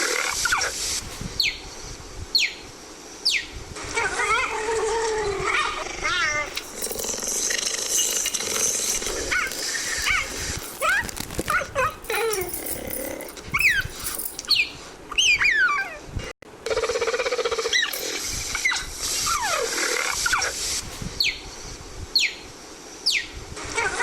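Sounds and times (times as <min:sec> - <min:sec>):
leopard growling: 0:04.8 - 0:10.6, 0:11.6 - 0:14.1
rapid rasping rattle: 0:06.5 - 0:14.6.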